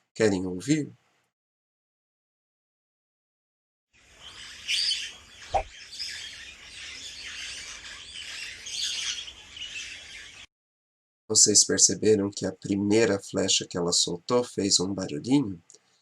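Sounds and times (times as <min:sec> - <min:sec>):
birds chirping: 0:04.0 - 0:10.5.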